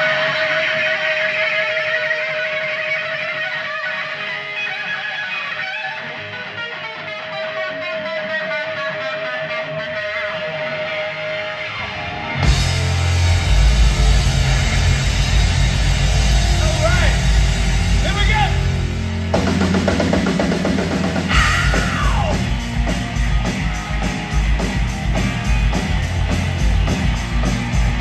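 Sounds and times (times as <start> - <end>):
electric guitar solo: 0.0 - 19.9
rock band playing: 0.0 - 28.0.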